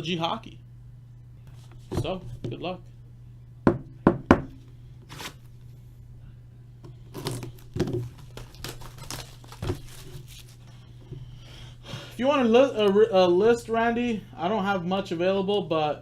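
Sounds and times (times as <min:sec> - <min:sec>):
steady low hum: 0:00.0 - 0:16.0
plastic wrapping tearing and crinkling: 0:07.1 - 0:10.6.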